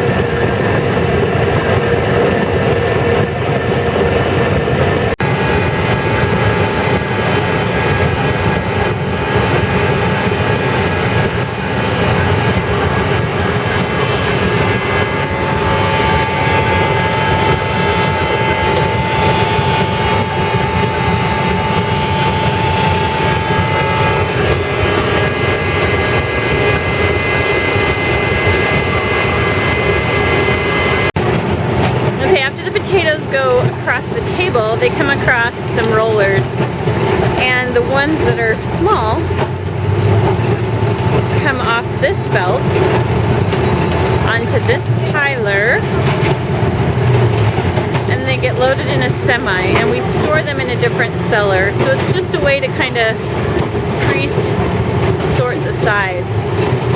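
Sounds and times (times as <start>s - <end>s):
thin higher whine: 0.0s - 31.1s
machinery mechanical drone: 0.0s - 56.9s
steady whining tones: 0.0s - 56.9s.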